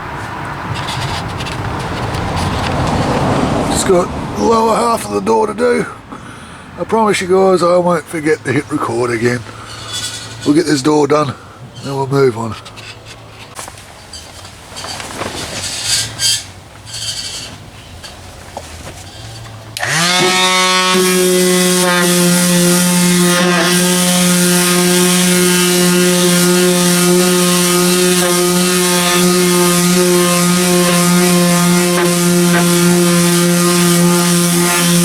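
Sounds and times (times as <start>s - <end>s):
light knocks and rubbing: 0.2s - 3.6s, 8.5s - 19.7s
power sander whining: 6.8s - 14.9s, 19.0s - 35.0s.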